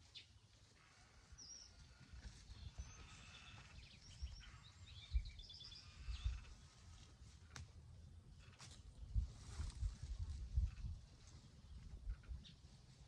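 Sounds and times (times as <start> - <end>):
birds chirping: 1.2 - 6.9.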